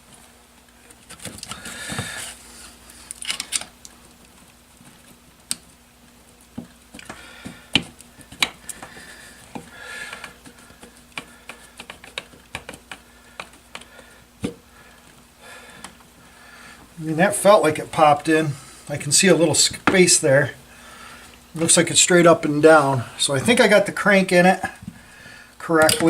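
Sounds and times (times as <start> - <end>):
metal parts clicking and tapping: 25.8 - 26.0.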